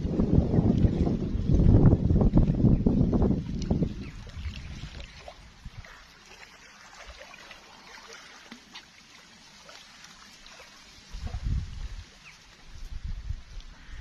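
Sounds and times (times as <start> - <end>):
faint water lapping and trickling: 0.0 - 14.0
small light ticks: 12.5 - 13.8.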